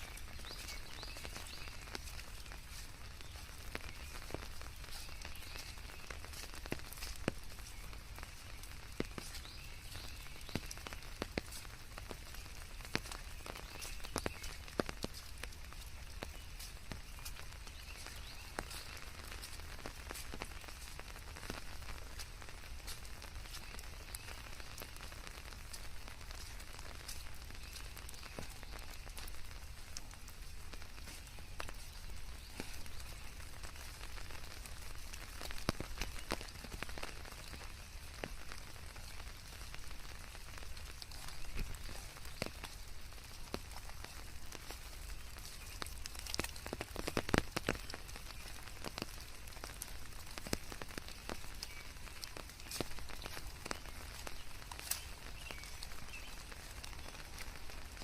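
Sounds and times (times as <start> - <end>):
raindrop ticks: 0.0 - 58.0
steady rainfall hiss: 0.0 - 58.0.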